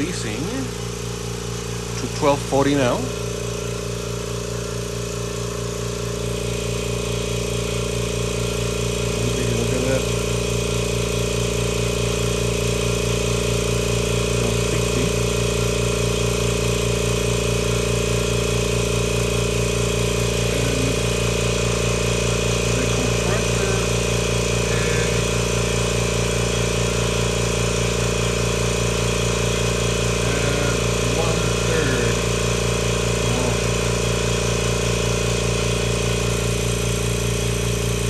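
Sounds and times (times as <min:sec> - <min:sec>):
electric air compressor running: 0:00.0 - 0:38.0.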